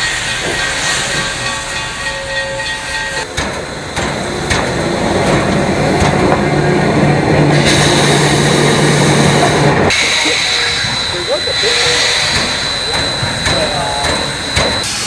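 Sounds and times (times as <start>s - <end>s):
steam hissing: 0.0s - 15.0s
train noise: 0.0s - 15.0s
sharp knocks and clanks: 10.0s - 14.8s.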